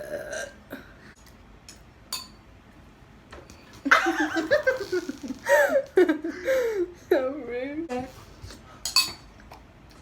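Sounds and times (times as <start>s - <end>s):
giggling laughter: 3.8s - 6.9s
cutlery clinking on a dish: 8.9s - 9.3s.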